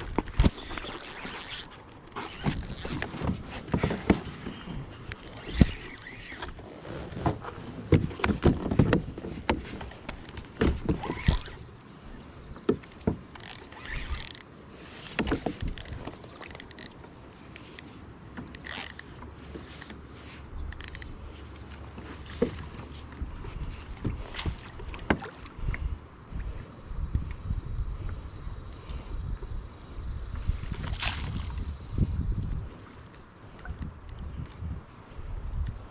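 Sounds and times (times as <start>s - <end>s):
wind rumble on microphone: 0.0s - 1.6s, 20.4s - 35.9s
gear knocking on plastic kayak: 7.2s - 11.6s, 15.1s - 17.0s.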